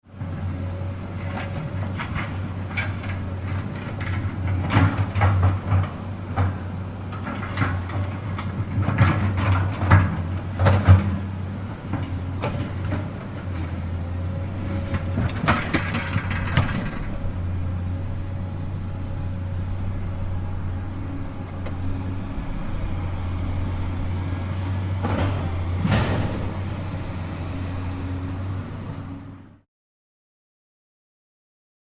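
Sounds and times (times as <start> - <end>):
truck engine droning: 0.2 - 29.6
metallic clanks and knocks: 14.9 - 17.4, 24.8 - 26.8.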